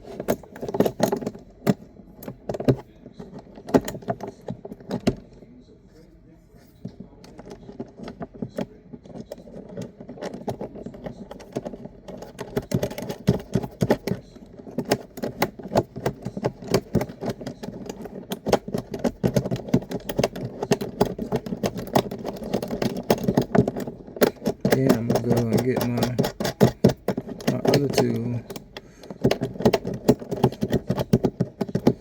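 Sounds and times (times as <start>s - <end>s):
small metal hardware rattling: 7.2s - 32.0s.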